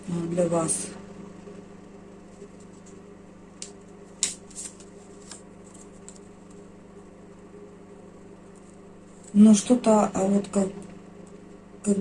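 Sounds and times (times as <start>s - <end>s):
steady low hum: 0.0s - 12.0s
cards clicking and rustling: 3.6s - 6.6s.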